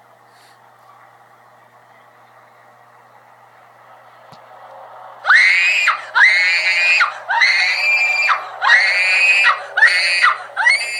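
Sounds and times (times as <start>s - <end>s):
high wailing cries: 5.2s - 10.9s.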